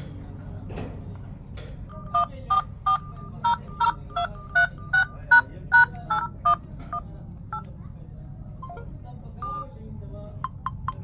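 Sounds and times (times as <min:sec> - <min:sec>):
smartphone beeping melody: 0:02.1 - 0:07.6, 0:08.6 - 0:09.6.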